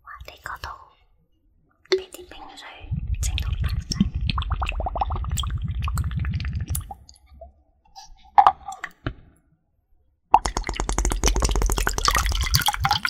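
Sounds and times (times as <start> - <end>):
wet clicking and squishing water: 3.2 - 7.4, 10.4 - 13.0.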